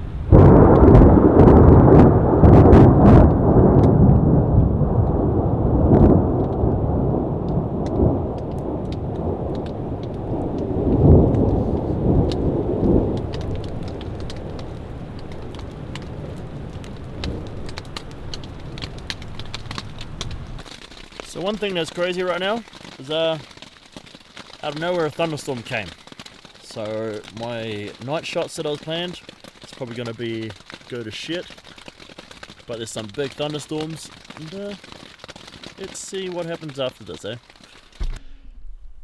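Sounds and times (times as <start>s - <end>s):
thunder rumbling: 0.0s - 23.4s
rain falling: 0.0s - 38.3s
raindrop hits ticking: 0.0s - 38.3s.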